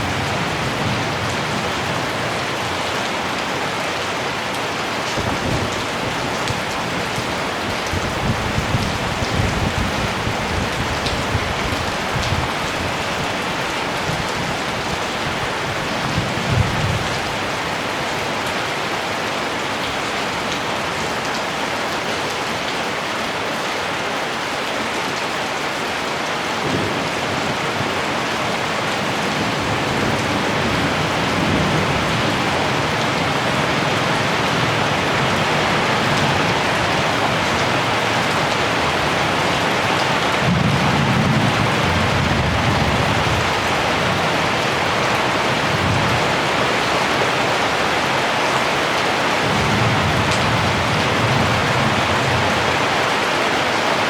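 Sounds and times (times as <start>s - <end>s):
heavy rain falling: 0.0s - 54.0s
distant thunder rumbles: 49.4s - 52.8s.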